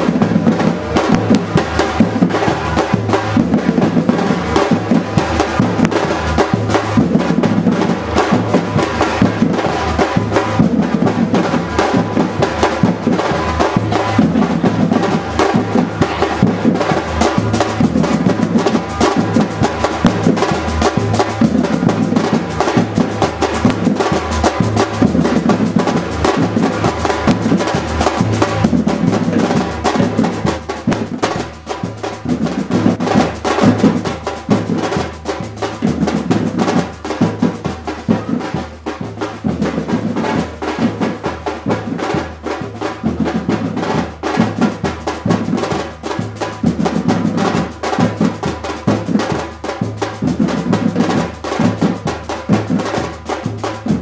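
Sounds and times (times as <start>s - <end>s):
deep bass drums: 0.0s - 38.4s
street percussion ensemble: 0.0s - 54.0s.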